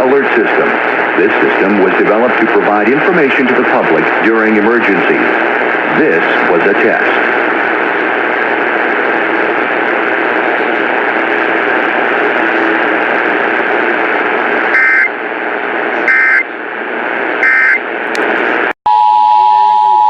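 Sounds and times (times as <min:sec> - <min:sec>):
radio static hiss: 0:00.0 - 0:18.8
warbling data bursts: 0:17.4 - 0:17.8.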